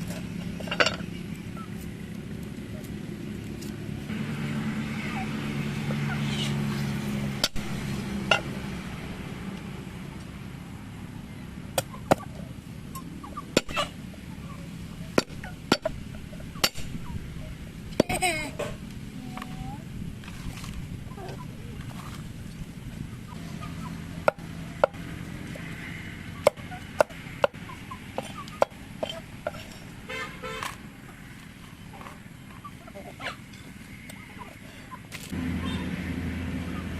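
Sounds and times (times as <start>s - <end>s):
blade chopping strokes: 13.6s - 14.0s.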